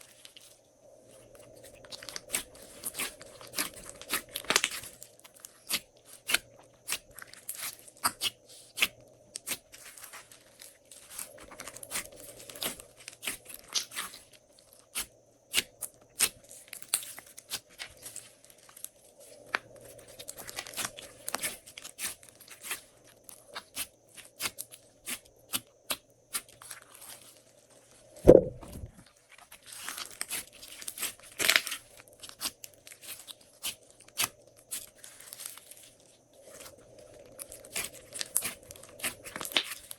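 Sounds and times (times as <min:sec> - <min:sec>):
loud low thud: 0:28.3 - 0:28.9.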